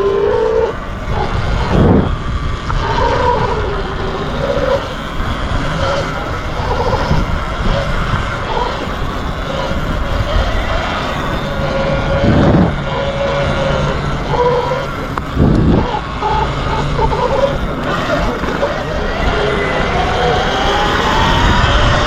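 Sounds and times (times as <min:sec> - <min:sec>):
jet ski engines droning: 0:00.0 - 0:22.0
wind rumble on microphone: 0:00.0 - 0:22.0.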